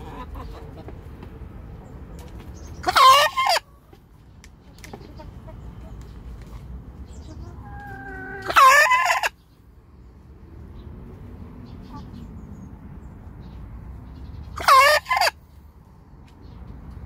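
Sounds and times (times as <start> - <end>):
hen calling: 7.2 - 9.4.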